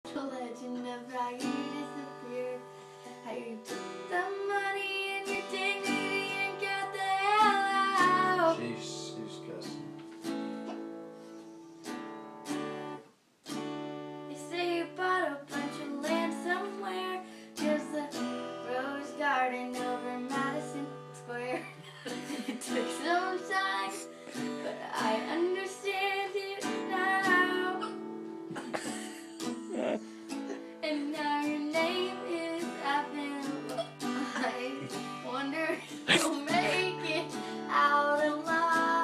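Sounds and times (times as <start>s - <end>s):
woman singing: 0.0s - 8.6s, 14.3s - 28.1s, 30.8s - 39.0s
strummed guitar chords: 1.4s - 14.2s, 19.7s - 39.0s
hiccups: 10.6s - 11.0s, 27.6s - 30.7s, 33.7s - 34.1s, 36.0s - 36.9s.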